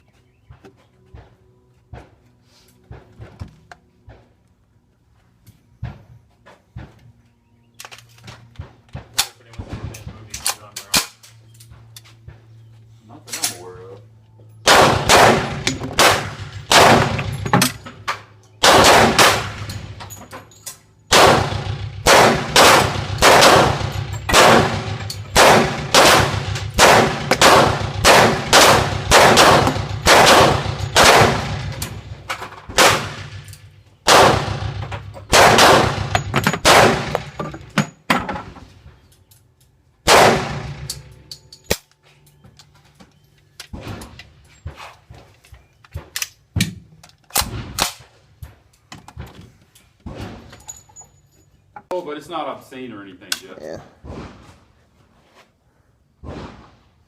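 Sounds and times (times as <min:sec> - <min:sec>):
gunshots: 0:14.6 - 0:17.8, 0:18.6 - 0:20.0, 0:21.1 - 0:37.4, 0:40.0 - 0:41.1, 0:56.2 - 0:56.9.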